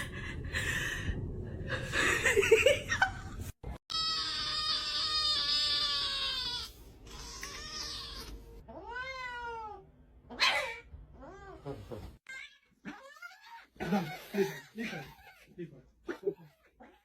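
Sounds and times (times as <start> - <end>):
cat meowing: 4.0 - 11.6.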